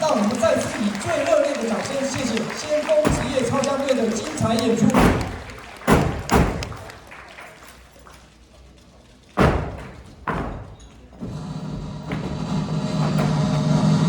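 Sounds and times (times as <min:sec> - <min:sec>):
heavy echoing thuds: 0:02.9 - 0:06.9, 0:09.4 - 0:14.0.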